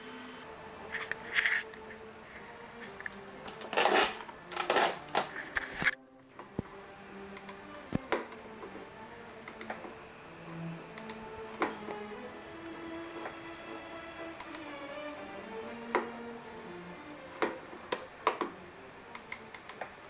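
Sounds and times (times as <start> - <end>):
faint electrical hum: 0.0 - 20.0
computer keyboard clicks: 9.5 - 9.8, 19.1 - 19.9.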